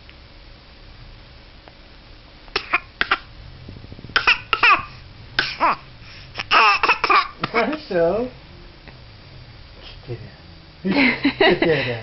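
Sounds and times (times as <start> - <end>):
baby coughing: 2.6 - 3.3, 4.2 - 5.8, 6.4 - 7.8.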